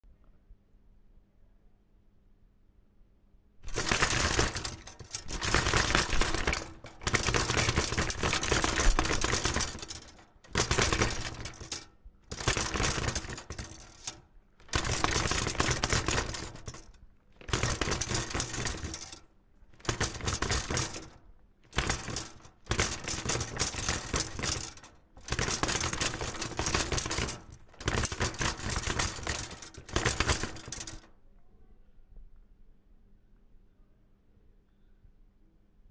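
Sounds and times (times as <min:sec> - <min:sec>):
swords rattling: 0:03.7 - 0:31.1.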